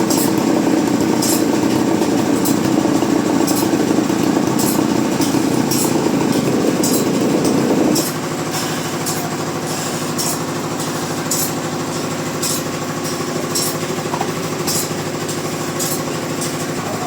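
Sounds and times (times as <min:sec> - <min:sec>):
engine running steadily: 0:00.0 - 0:17.0.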